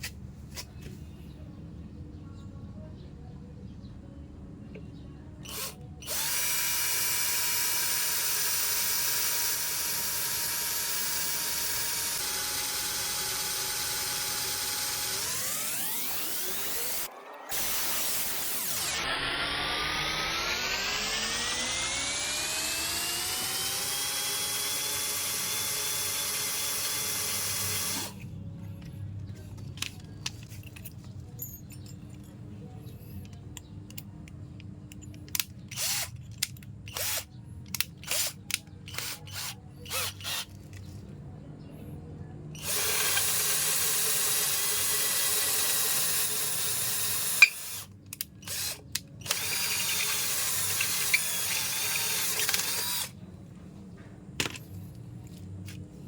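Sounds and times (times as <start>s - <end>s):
power drill whining: 5.4s - 28.2s, 35.7s - 36.2s, 36.9s - 37.2s, 38.0s - 40.5s, 42.6s - 53.2s.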